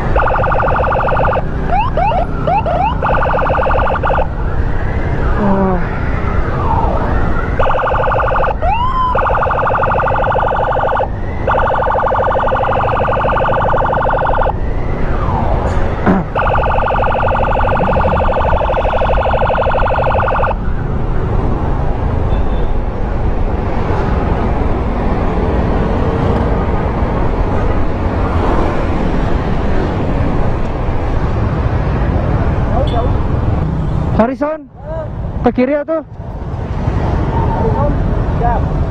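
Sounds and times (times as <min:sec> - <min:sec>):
electronic siren warbling: 0:00.0 - 0:20.6
wind: 0:00.0 - 0:38.9.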